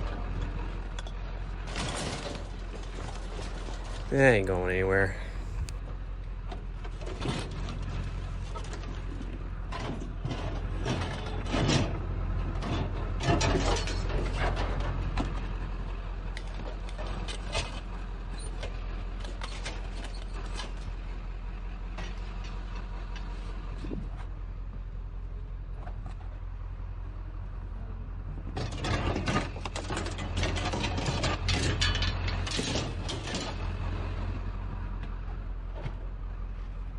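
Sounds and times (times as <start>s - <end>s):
steady low hum: 3.6s - 5.8s
scrap metal clanking and scraping: 28.6s - 33.8s.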